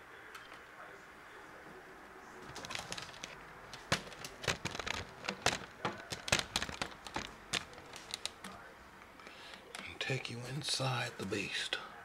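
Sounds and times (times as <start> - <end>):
sharp clicks and light taps: 2.4 - 8.6.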